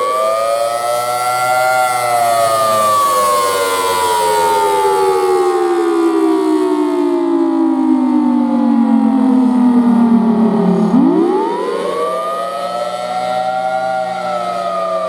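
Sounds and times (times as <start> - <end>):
warning siren wailing: 0.0 - 15.0.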